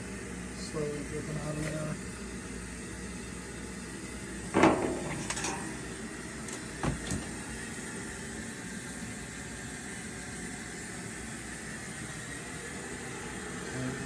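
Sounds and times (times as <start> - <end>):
steady low hum: 0.0 - 14.0
objects knocking: 4.6 - 5.8.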